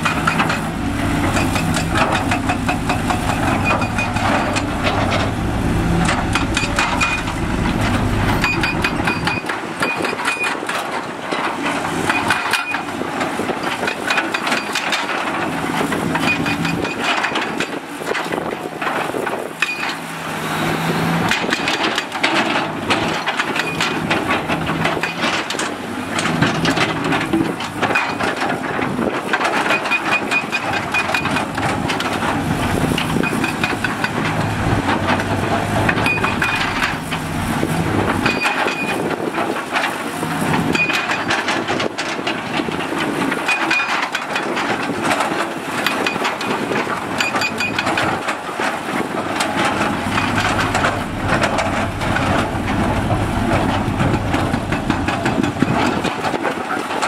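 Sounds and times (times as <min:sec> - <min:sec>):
rock and metal clattering: 0:00.0 - 0:20.1, 0:21.0 - 0:57.0
diesel engine running: 0:00.0 - 0:57.0
high repeated beeping: 0:08.4 - 0:10.4.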